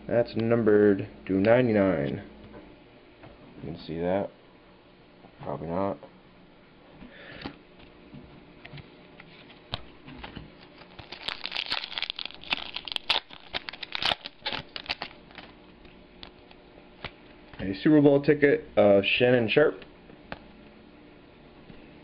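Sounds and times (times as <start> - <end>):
plastic packaging crinkling: 10.7 - 15.6.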